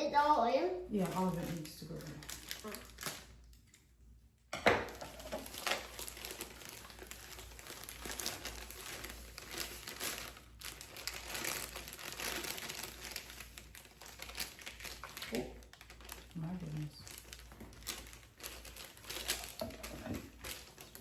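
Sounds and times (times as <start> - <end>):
bag crinkling and rustling: 0.9 - 3.5, 4.8 - 21.0
dry mix pouring: 4.9 - 21.0.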